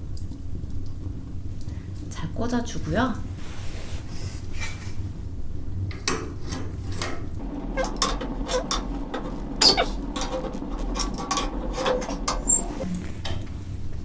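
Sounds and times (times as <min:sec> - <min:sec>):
wood fire crackling and popping: 0:07.2 - 0:14.0
metal clinking: 0:07.4 - 0:13.5
low steady hum: 0:07.4 - 0:14.0.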